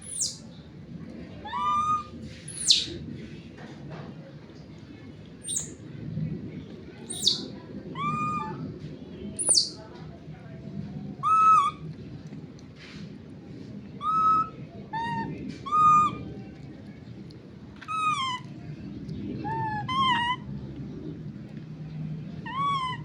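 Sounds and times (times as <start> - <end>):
baby monkey high-pitched calls: 0.0 - 0.4, 1.4 - 3.0, 5.4 - 5.8, 7.1 - 8.6, 9.4 - 9.8, 11.2 - 11.8, 14.0 - 16.2, 17.9 - 18.4, 19.5 - 20.5, 22.4 - 23.0.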